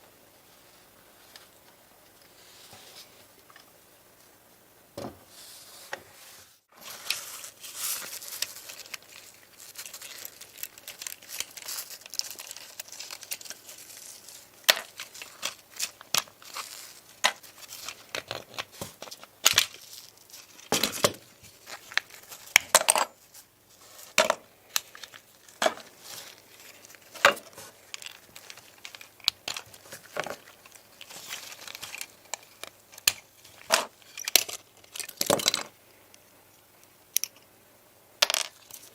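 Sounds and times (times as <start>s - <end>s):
rustling scraping noise: 2.3s - 3.3s, 5.2s - 10.4s.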